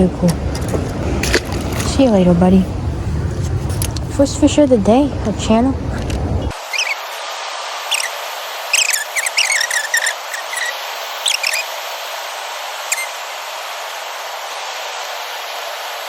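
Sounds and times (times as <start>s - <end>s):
high squeaky chirps: 6.5s - 7.2s, 7.9s - 11.7s, 12.8s - 13.2s
water rushing over spillway: 6.5s - 16.0s.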